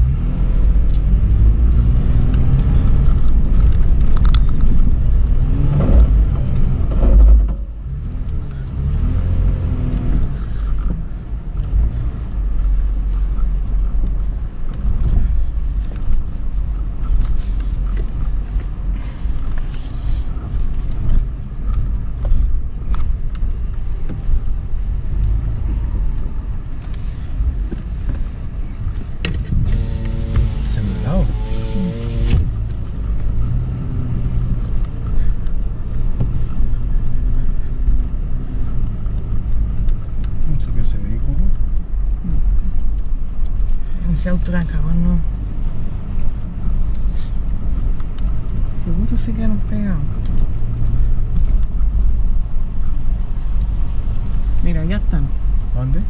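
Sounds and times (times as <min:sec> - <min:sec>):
engine revving under load: 0:05.3 - 0:10.5, 0:29.2 - 0:35.3.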